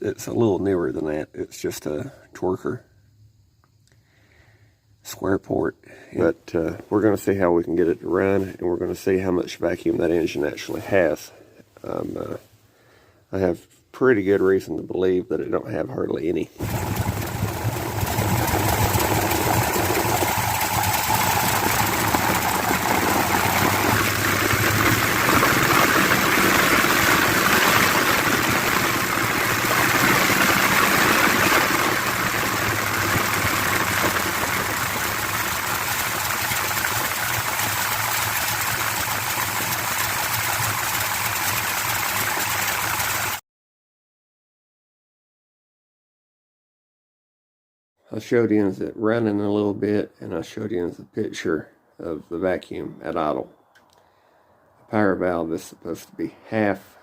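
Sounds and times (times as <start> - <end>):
car engine idling: 16.6 - 43.2.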